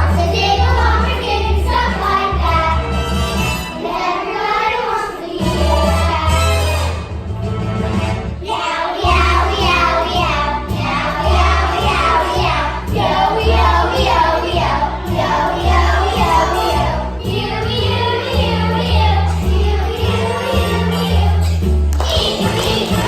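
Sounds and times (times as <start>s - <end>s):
children singing: 0.0s - 7.1s, 7.8s - 23.0s.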